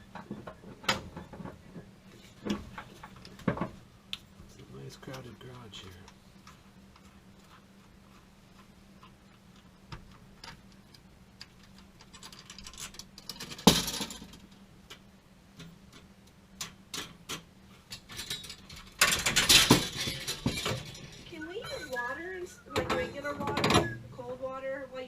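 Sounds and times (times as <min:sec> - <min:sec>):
tools and metal parts clinking: 0:10.4 - 0:14.5, 0:16.9 - 0:24.0
rattling clatter: 0:18.0 - 0:24.0.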